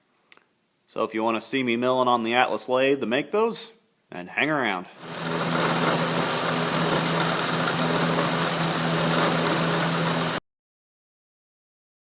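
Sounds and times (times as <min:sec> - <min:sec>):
motor humming: 0:05.0 - 0:10.4.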